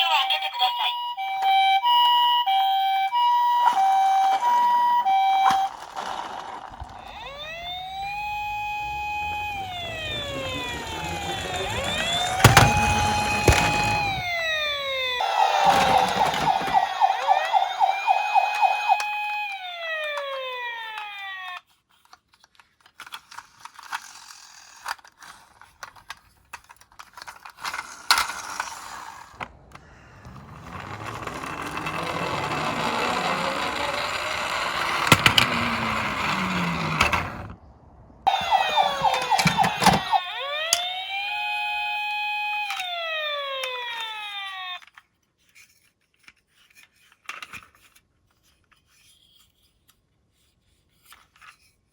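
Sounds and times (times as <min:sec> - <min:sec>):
electronic toy siren: 0:00.0 - 0:21.7, 0:29.1 - 0:37.5, 0:38.2 - 0:45.0.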